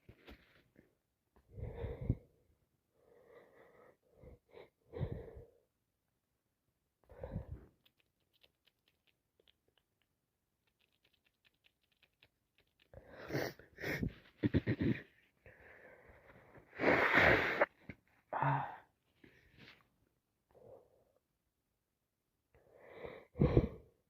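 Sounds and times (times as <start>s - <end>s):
wet sniffs and noisy breaths: 12.7s - 14.6s.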